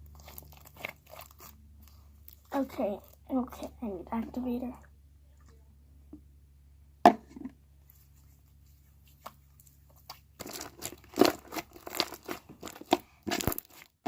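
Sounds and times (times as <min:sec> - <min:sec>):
slime crackling and tearing: 0:00.0 - 0:03.3, 0:10.0 - 0:14.0.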